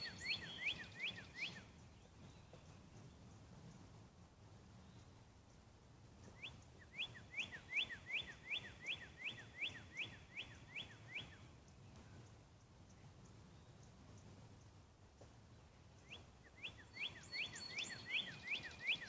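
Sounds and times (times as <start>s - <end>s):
bird singing sharp rising notes: 0.0s - 1.7s, 6.4s - 11.5s, 16.1s - 19.0s.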